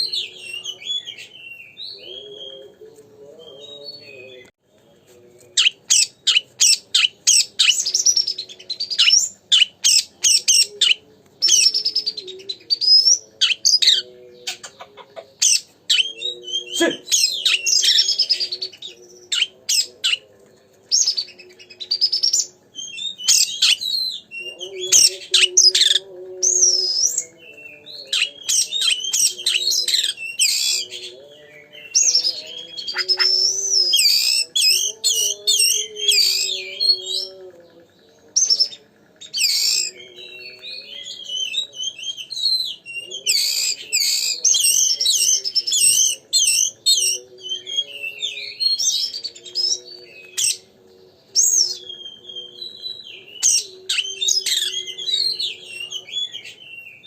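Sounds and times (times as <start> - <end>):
bird singing whistles and trills: 5.6 - 14.7, 20.9 - 57.0.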